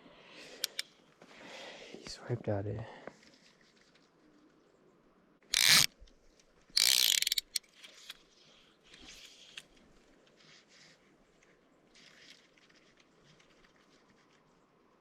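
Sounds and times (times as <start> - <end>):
fishing reel drag clicking: 0.6 - 0.9, 5.5 - 5.9, 6.8 - 8.2.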